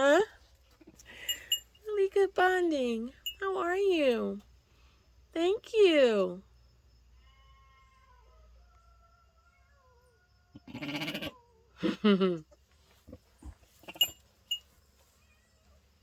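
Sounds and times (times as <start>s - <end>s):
sheep bleating loudly: 10.7s - 11.3s.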